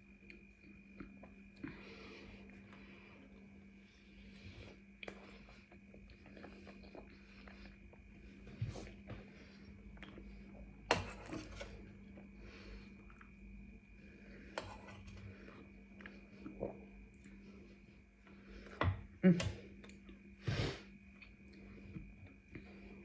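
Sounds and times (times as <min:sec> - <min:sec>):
faint steady hum: 0:00.0 - 0:23.0
chewing: 0:05.0 - 0:09.0.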